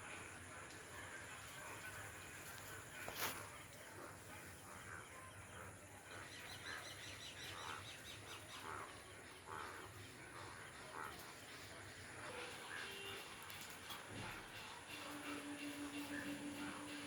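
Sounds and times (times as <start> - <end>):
frogs croaking: 0.0 - 17.0.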